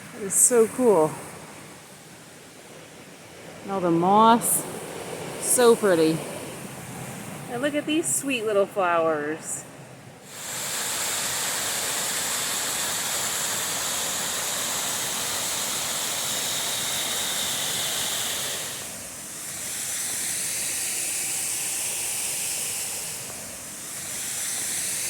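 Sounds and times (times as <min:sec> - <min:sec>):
rushing water: 0:00.0 - 0:09.2, 0:10.2 - 0:25.0.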